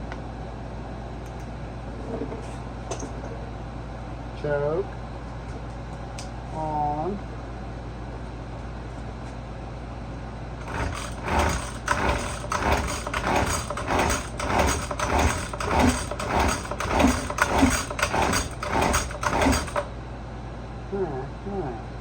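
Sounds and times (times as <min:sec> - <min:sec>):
engine turning over: 0:10.6 - 0:19.9
recoil starter cord pulls: 0:10.6 - 0:19.9.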